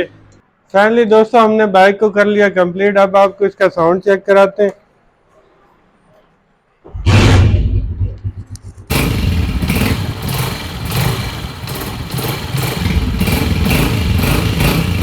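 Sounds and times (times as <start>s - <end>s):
motorcycle engine running: 8.0s - 15.0s.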